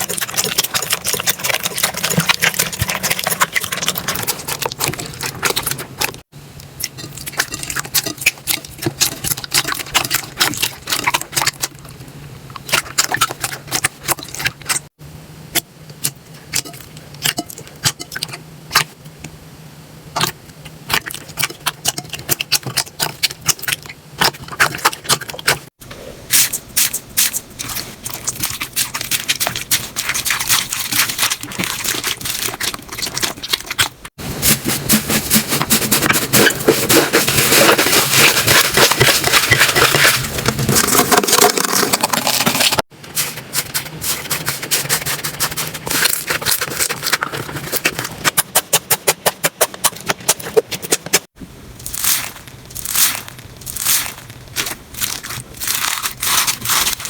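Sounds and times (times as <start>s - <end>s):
slime squeezed by hand: 51.8s - 57.0s.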